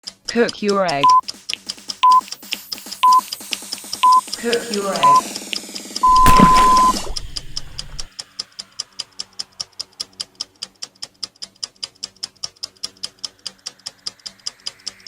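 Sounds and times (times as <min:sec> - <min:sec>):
clock ticking: 0:01.0 - 0:01.2.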